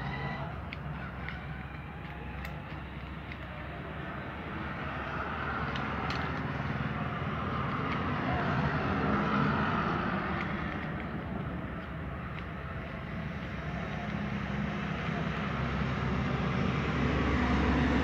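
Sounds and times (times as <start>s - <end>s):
motor vehicle running: 0.0s - 18.0s.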